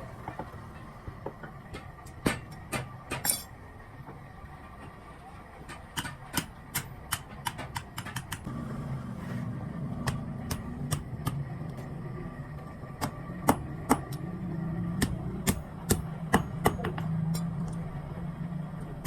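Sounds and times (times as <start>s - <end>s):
low mechanical hum: 0.0s - 19.0s
hammer tapping on metal: 15.0s - 17.1s.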